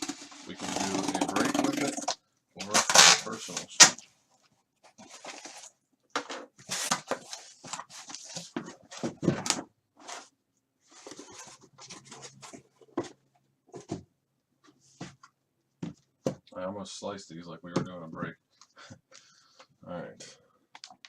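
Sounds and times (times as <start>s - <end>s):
cardboard tearing: 0.0s - 4.0s.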